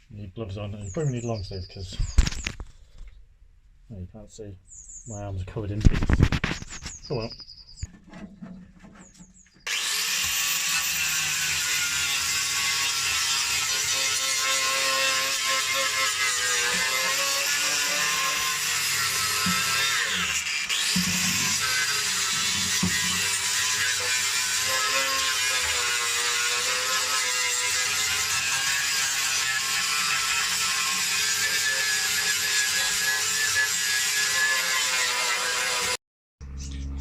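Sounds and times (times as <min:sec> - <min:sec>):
angle grinder on sheet metal: 0:09.6 - 0:36.0.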